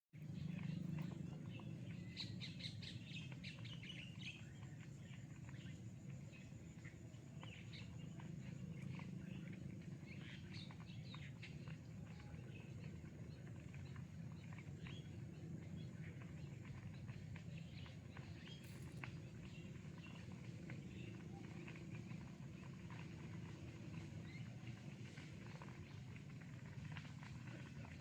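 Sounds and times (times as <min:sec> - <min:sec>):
faint low rumble: 0:00.2 - 0:28.0
small birds chirping: 0:00.2 - 0:28.0.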